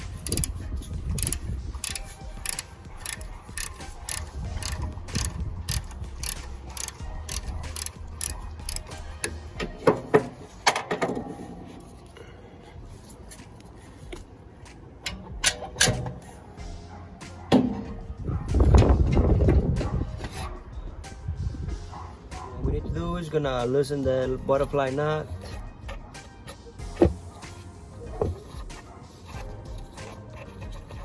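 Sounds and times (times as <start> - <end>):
ratchet wrench clicking: 0.0 - 9.5
tools knocking: 0.1 - 11.3.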